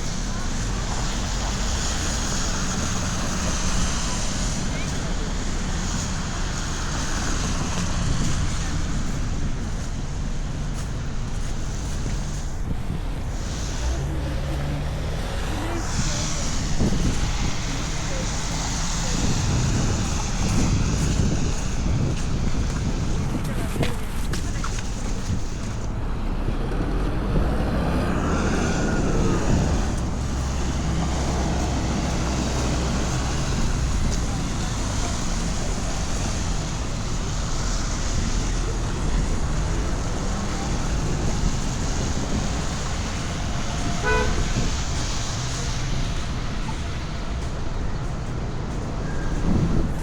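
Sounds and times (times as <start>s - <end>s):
city road traffic: 0.0s - 50.0s
car horn beep: 44.0s - 44.6s.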